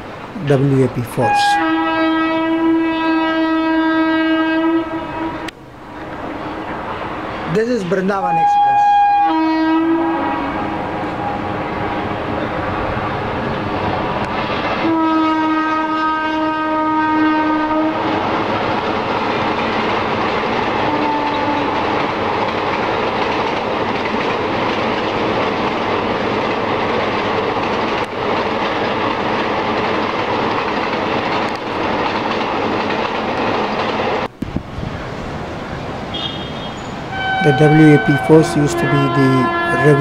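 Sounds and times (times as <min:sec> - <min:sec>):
train rumble and wheel clatter: 0:00.0 - 0:40.0
locomotive horn: 0:01.2 - 0:05.6, 0:08.2 - 0:12.5, 0:14.8 - 0:18.4, 0:20.8 - 0:22.2, 0:36.1 - 0:40.0.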